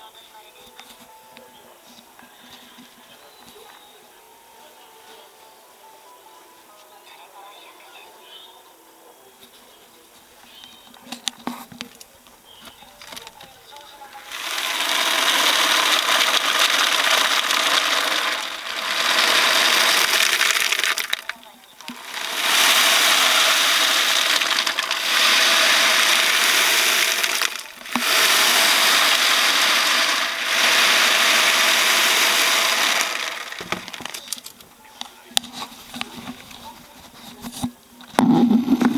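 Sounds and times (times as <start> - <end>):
loud rustling pouring hiss: 14.0 - 34.6.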